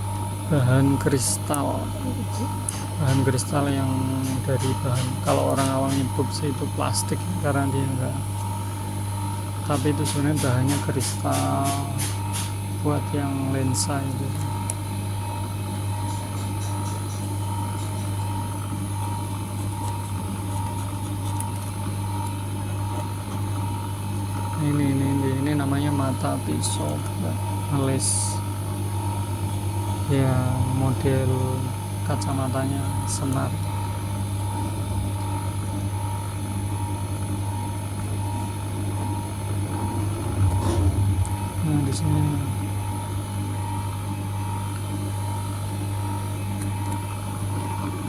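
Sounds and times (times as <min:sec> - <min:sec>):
constant high whine: 0:00.0 - 0:18.0, 0:24.4 - 0:48.0
low motor hum: 0:00.0 - 0:48.0
faint constant whine: 0:37.6 - 0:48.0.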